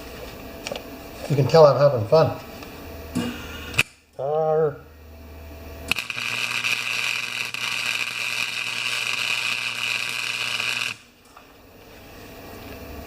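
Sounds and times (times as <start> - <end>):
arc welder hissing: 3.1 - 4.0, 5.8 - 11.2.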